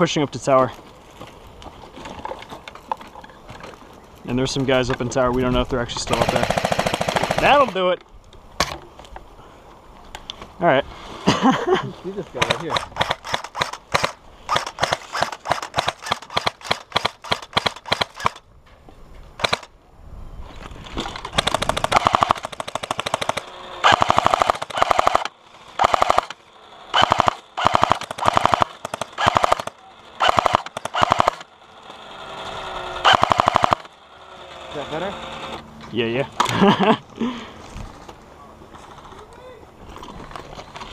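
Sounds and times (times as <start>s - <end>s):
airsoft gun full-auto bursts: 6.1s - 7.8s, 12.4s - 18.4s, 19.4s - 19.7s, 21.4s - 35.6s
airsoft gun single shots: 12.4s - 18.4s, 33.0s - 33.9s
gearbox motor whine: 23.4s - 35.8s.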